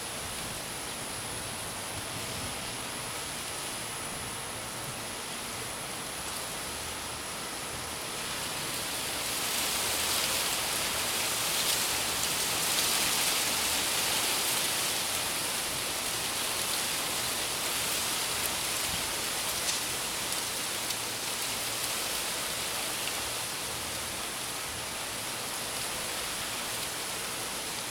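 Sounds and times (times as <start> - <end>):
heavy rain pouring: 0.1 - 27.9
faint raindrop ticks: 19.5 - 21.0.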